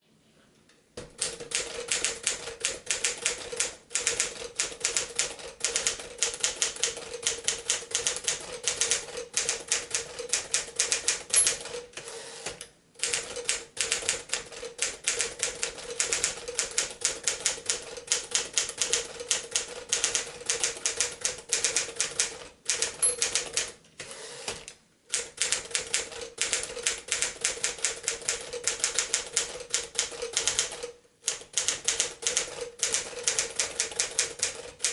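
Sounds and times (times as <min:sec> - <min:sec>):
manual typewriter typing: 0:01.2 - 0:12.1, 0:13.0 - 0:23.8, 0:25.1 - 0:34.9.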